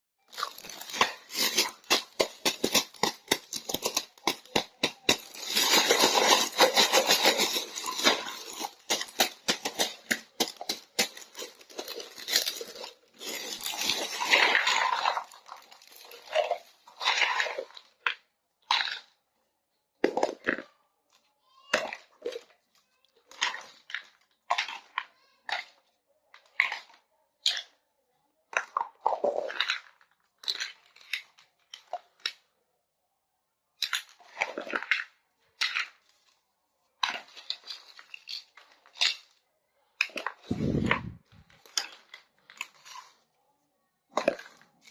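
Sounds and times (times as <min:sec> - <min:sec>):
packaging crinkling and tearing: 0:00.3 - 0:17.8
plastic pieces clicking: 0:00.3 - 0:17.8, 0:28.5 - 0:32.4, 0:37.0 - 0:39.4.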